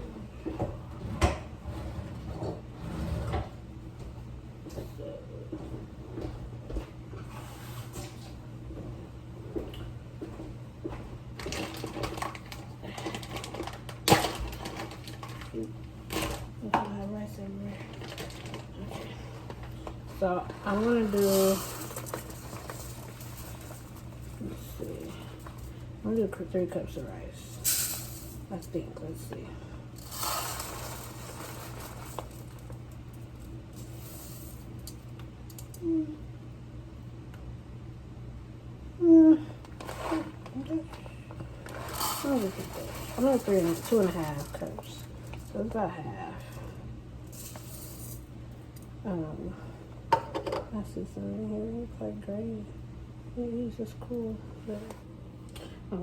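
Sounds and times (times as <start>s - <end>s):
steady low hum: 0.0s - 56.0s
dry rice poured into cup: 30.0s - 32.5s.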